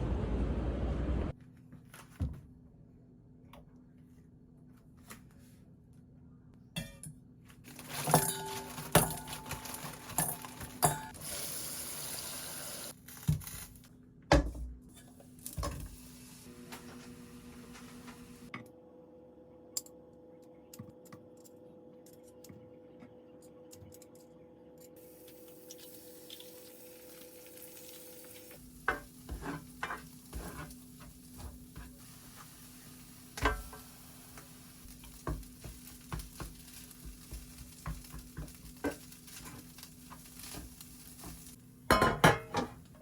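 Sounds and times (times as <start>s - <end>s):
dishes and utensils clinking: 6.8s - 11.2s, 41.9s - 42.8s.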